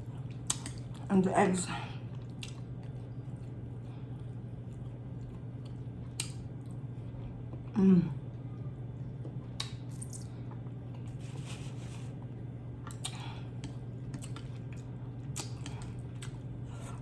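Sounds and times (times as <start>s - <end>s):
steady low hum: 0.0s - 17.0s
wet chewing: 0.2s - 1.1s, 2.0s - 7.7s, 12.8s - 17.0s.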